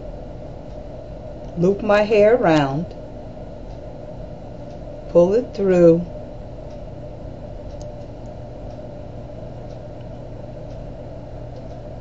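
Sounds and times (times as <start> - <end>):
background hum and hiss: 0.0 - 12.0
faint soft ticks: 7.7 - 8.8, 11.5 - 11.9.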